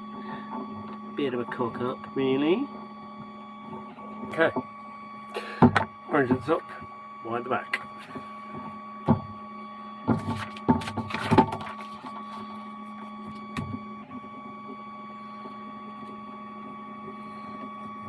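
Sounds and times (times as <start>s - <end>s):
steady machine hum: 0.0s - 18.0s
knocks of tools and leather: 8.6s - 9.4s.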